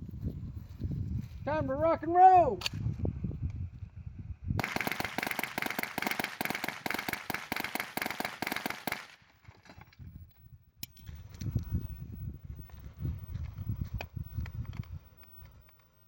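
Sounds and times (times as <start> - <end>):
rapid sharp bangs: 4.6 - 9.2.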